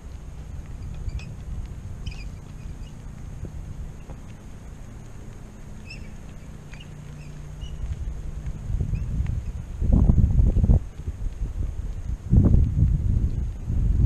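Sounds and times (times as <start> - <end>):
wind buffeting microphone: 0.0 - 14.0
high bird chirps: 0.8 - 1.4, 2.0 - 3.1, 5.8 - 7.9.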